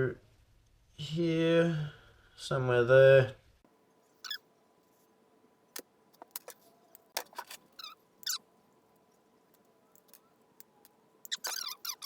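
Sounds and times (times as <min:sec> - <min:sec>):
short squeaks: 0:04.2 - 0:04.4, 0:07.4 - 0:08.4, 0:11.3 - 0:12.0.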